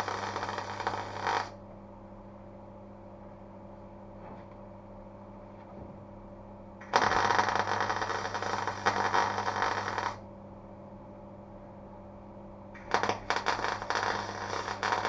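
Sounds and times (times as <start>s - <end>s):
welder crackling and sizzling: 0.0s - 1.5s, 7.0s - 10.2s, 12.8s - 15.0s.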